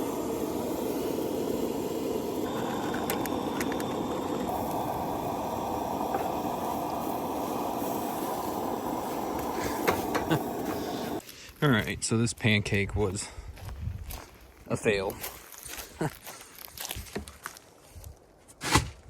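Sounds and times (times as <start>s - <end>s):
stove burner running: 0.0s - 11.2s.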